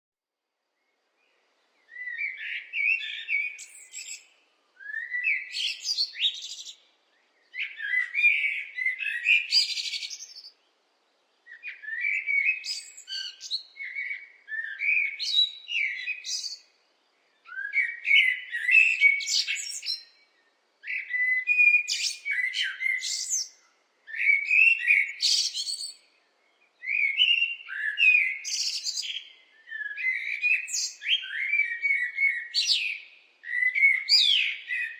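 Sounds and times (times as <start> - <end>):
blackbird singing: 0.8 - 10.8, 11.4 - 34.9.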